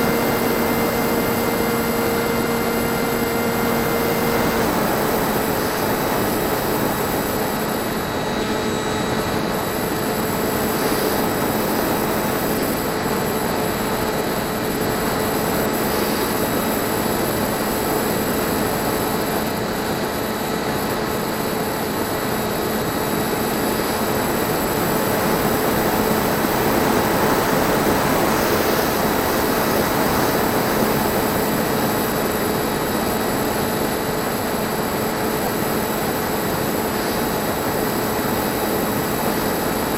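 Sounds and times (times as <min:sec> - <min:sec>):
electric motor and propeller whine: 0:00.0 - 0:39.9.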